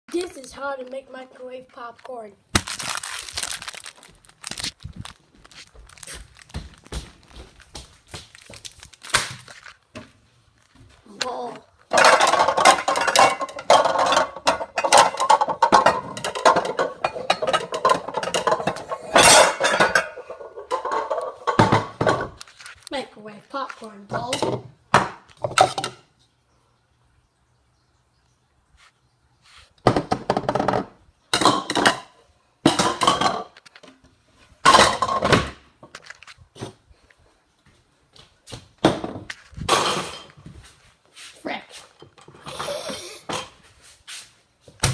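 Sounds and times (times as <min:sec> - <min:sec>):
small hard objects clattering: 0:01.6 - 0:10.0, 0:11.8 - 0:22.9
kitchen things clattering: 0:11.8 - 0:22.8, 0:25.4 - 0:26.1, 0:29.9 - 0:34.0, 0:34.6 - 0:36.8, 0:38.9 - 0:40.5, 0:42.0 - 0:43.7.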